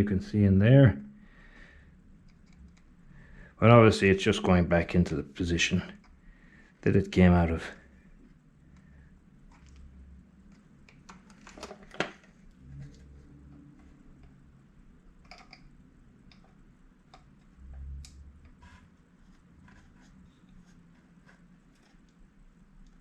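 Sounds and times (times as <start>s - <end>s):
plastic parts clicking: 15.2s - 15.7s.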